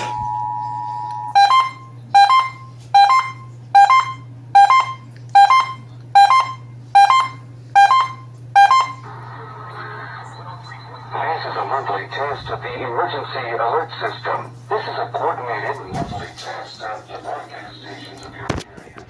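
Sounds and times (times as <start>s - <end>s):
two-tone alert signal: 0.0s - 9.0s.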